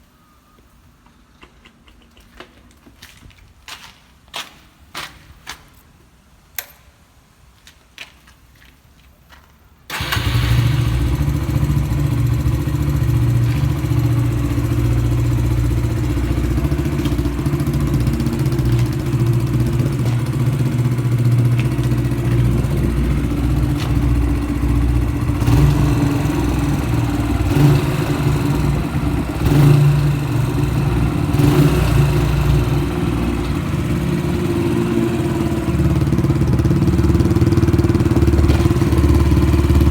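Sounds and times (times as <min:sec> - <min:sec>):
motorcycle engine idling: 0:09.9 - 0:39.9.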